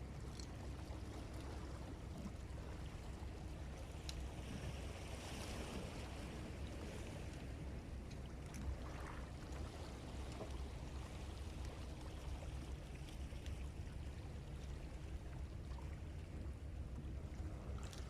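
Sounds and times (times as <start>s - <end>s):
faint small clicks: 4.0s - 4.2s
water lapping against rocks: 17.1s - 18.0s.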